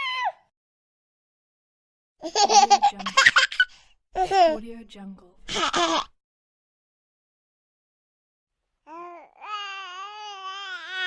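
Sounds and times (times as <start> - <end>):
baby wailing: 0.0 - 0.4, 8.9 - 11.0.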